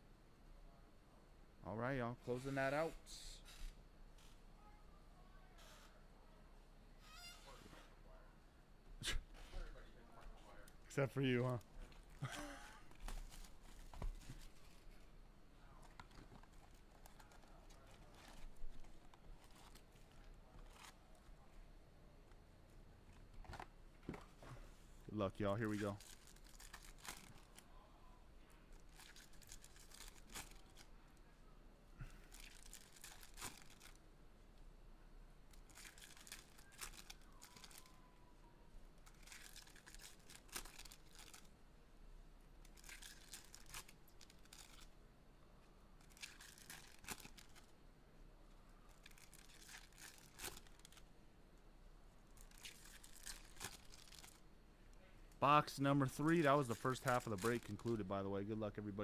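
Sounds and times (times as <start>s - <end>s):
foil wrappers tearing and crinkling: 25.6s - 27.6s, 28.9s - 30.9s, 32.3s - 34.0s, 35.6s - 38.0s, 39.0s - 41.5s, 42.7s - 44.9s, 46.0s - 47.7s, 49.0s - 51.0s, 52.4s - 54.4s, 56.3s - 57.9s.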